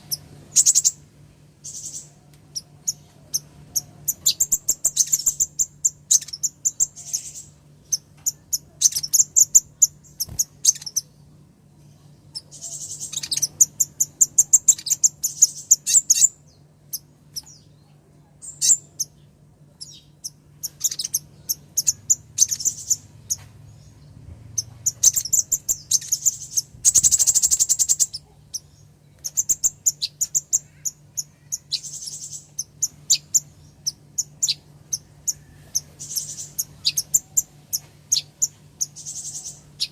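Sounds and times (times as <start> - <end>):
bird chirping: 0.0 - 1.0, 1.6 - 39.9
faint low hum: 0.0 - 39.9.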